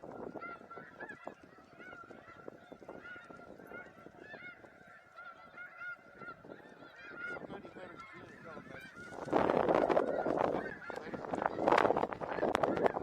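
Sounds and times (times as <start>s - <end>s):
flock of geese honking: 0.0s - 13.0s.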